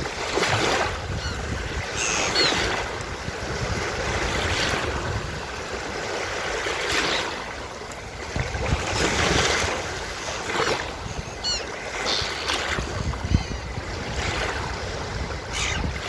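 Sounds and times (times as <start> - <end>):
surf washing onto beach: 0.0 - 16.0
gull calls: 1.2 - 2.8, 11.1 - 12.5, 15.5 - 16.0.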